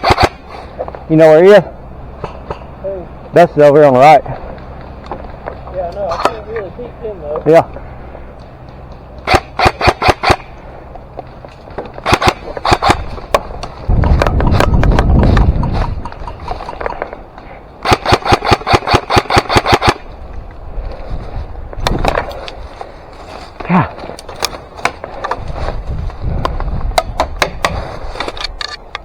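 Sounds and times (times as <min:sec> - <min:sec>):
airsoft guns firing bursts: 0:00.0 - 0:00.5, 0:09.2 - 0:10.5, 0:12.0 - 0:13.2, 0:17.8 - 0:20.0.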